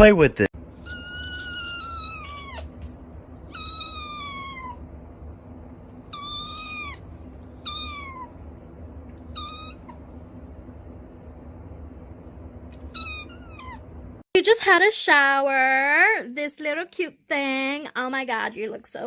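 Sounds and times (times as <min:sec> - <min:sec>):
cat meowing: 0:00.8 - 0:02.8, 0:03.4 - 0:04.8, 0:06.0 - 0:08.4, 0:09.2 - 0:10.0, 0:12.8 - 0:13.8.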